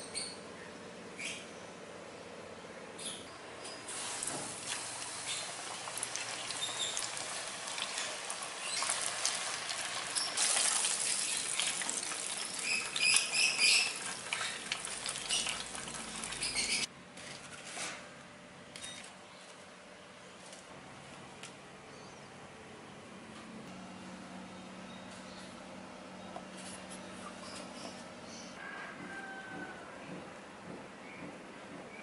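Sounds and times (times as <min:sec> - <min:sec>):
chicken sizzling in hot oil: 0:03.9 - 0:16.9
stirring in a pan: 0:06.1 - 0:16.9.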